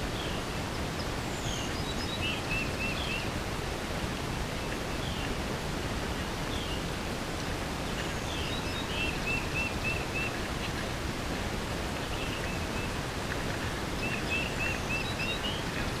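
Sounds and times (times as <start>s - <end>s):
songbird singing: 0.1s - 3.3s, 4.5s - 5.4s, 7.8s - 10.9s, 11.9s - 16.0s.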